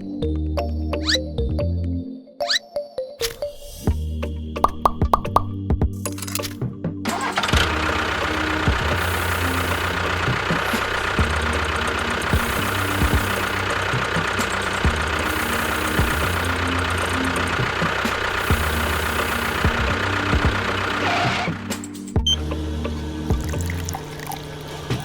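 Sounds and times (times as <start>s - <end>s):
engine running with knocking throb: 7.1s - 25.0s.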